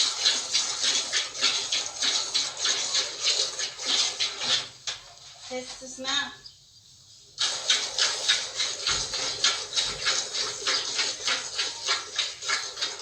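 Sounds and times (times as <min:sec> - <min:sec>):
milk squirting into a pail: 0:00.0 - 0:05.5, 0:07.4 - 0:13.0.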